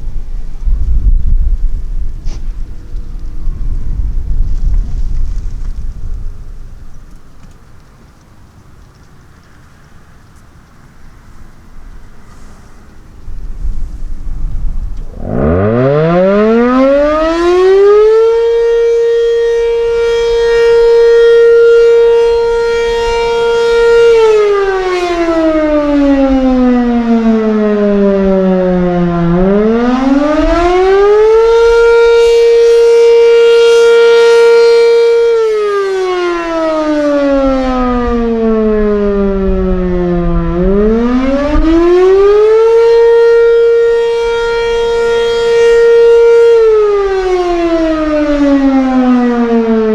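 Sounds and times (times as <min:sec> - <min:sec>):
tornado siren wavering wail: 0:00.0 - 0:49.9.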